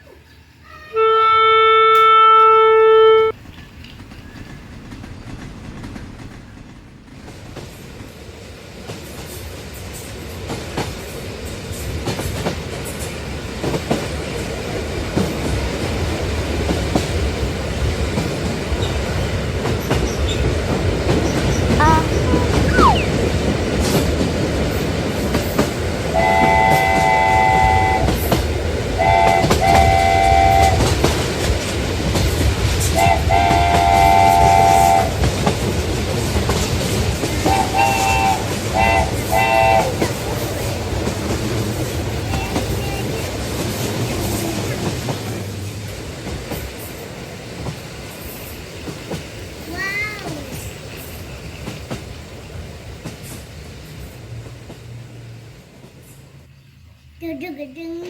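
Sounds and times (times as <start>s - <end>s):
model locomotive running: 24.4s - 52.8s.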